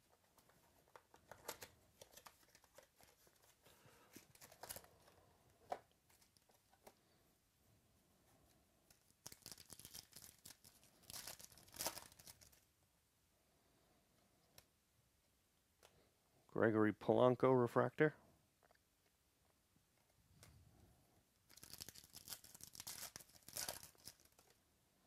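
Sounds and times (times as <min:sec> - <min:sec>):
packaging tearing and crinkling: 0:09.2 - 0:12.6, 0:21.5 - 0:24.6.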